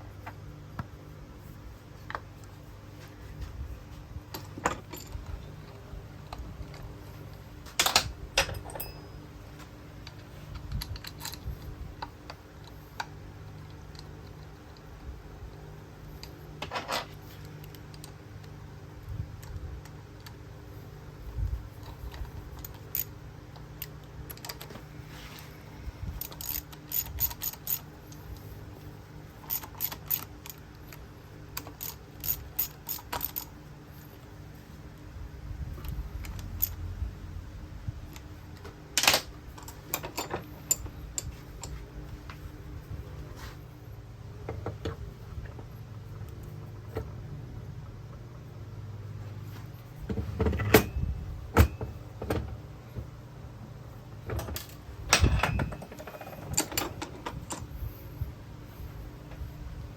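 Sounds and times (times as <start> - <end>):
low steady hum: 0.0 - 59.9
metal parts clicking: 26.2 - 28.5, 29.4 - 33.5, 54.3 - 58.0.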